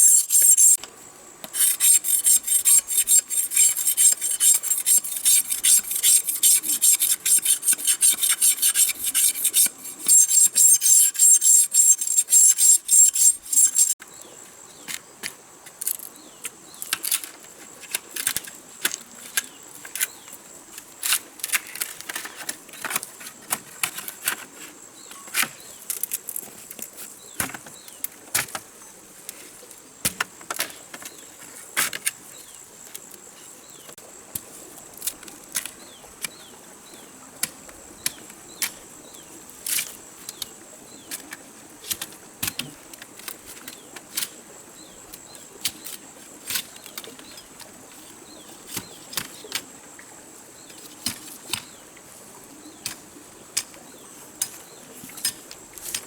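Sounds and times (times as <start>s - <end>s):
hand tool rasping wood: 0.0s - 0.8s, 1.5s - 14.0s.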